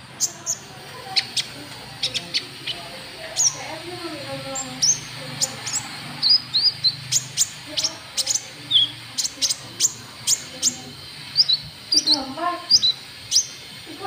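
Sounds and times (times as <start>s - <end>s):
bird chirping: 0.0s - 14.0s.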